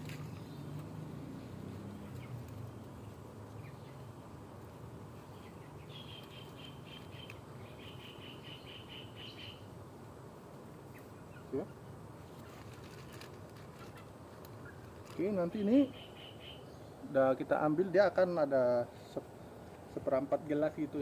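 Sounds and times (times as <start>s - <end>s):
bird chirping: 0.0s - 4.2s, 5.2s - 9.7s, 10.9s - 11.8s, 13.8s - 17.1s.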